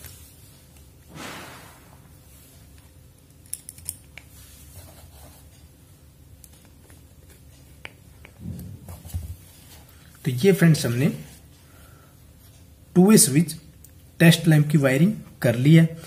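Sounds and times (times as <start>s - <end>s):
soft rush: 1.1s - 2.5s.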